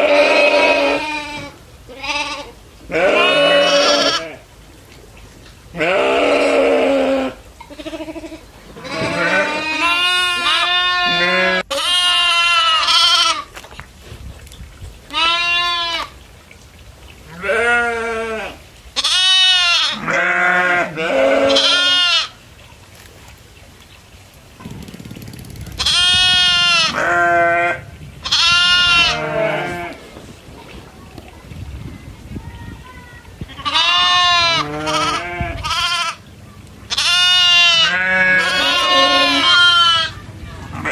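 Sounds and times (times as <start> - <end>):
goats bleating: 0.0 - 4.4, 5.7 - 13.5, 15.1 - 16.1, 17.3 - 22.4, 25.8 - 30.0, 33.5 - 36.2, 36.9 - 40.9.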